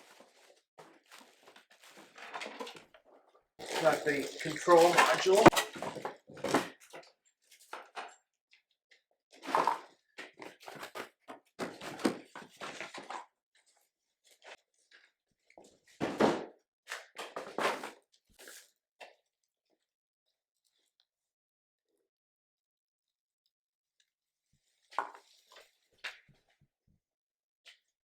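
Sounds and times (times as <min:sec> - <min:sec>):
packaging rustling: 0:03.6 - 0:06.0.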